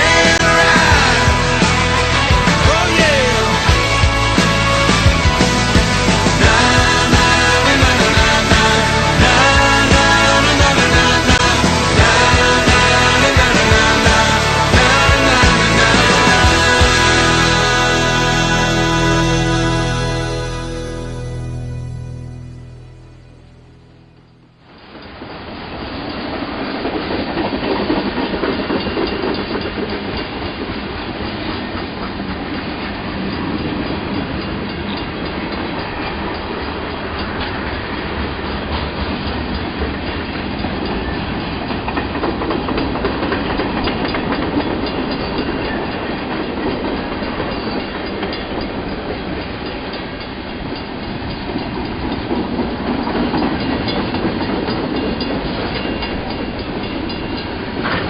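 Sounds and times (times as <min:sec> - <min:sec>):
freight train wheels on rails: 0:00.0 - 0:19.5, 0:24.6 - 0:58.0
wheels clickety-clack over rail joints: 0:24.8 - 0:58.0.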